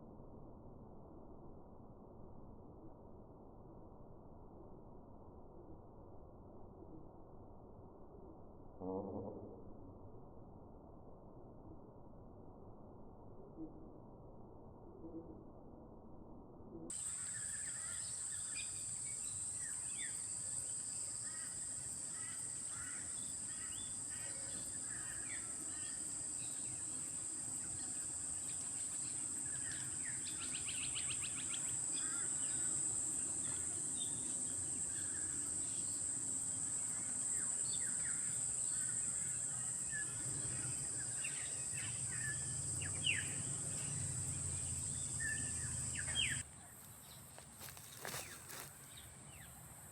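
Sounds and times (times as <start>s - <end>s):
high-pitched insect drone: 16.9s - 46.4s.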